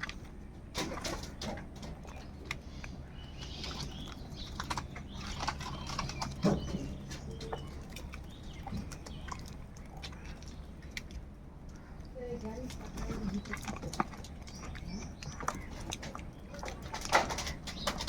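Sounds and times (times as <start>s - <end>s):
steady low hum: 0.0s - 18.0s
crows calling: 14.2s - 17.9s.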